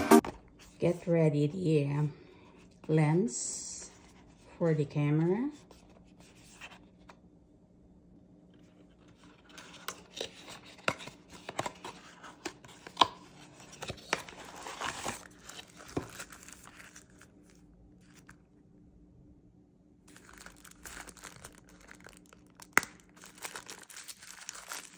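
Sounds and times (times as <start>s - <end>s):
packaging crinkling and tearing: 9.0s - 18.4s, 20.1s - 24.9s.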